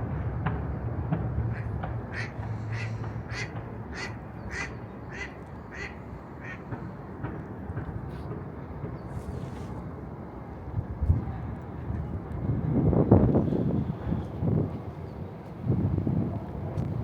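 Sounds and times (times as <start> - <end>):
low city rumble: 0.0 - 17.0
duck quacking: 1.6 - 6.6.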